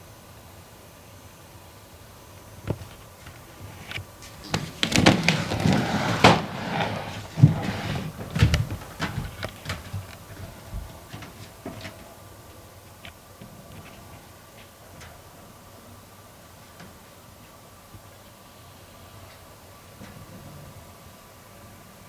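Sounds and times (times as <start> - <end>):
clicks knocks and clatters: 3.9 - 12.1.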